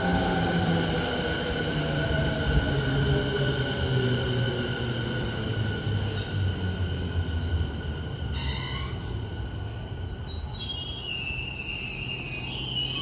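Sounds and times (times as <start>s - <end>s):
electric train rumbling: 0.0s - 13.0s
train brake squeals: 8.3s - 9.2s, 10.2s - 13.0s.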